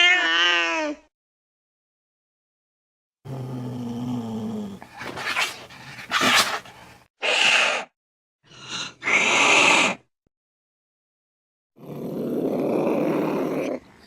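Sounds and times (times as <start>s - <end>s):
cat hissing: 4.8s - 7.9s, 8.6s - 10.0s
cat growling: 11.8s - 14.0s.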